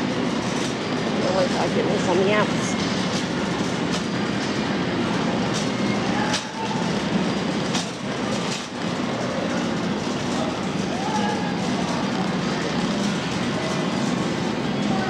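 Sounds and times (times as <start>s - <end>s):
shopping cart rattling: 0.0s - 15.0s.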